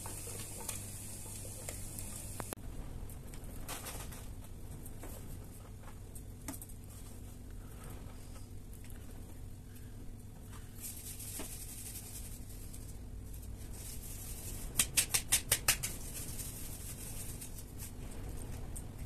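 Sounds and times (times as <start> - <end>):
faint hiss: 0.0 - 2.6.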